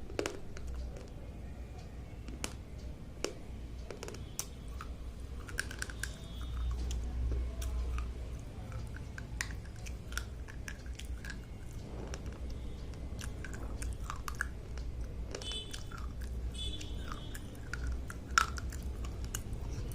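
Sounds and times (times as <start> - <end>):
slate pencils crunching: 13.1 - 19.9.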